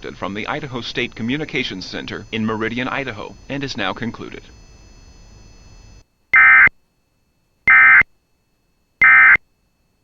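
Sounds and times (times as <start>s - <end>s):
buzzing digital data tones: 1.0s - 6.7s, 7.7s - 8.1s, 9.0s - 9.4s.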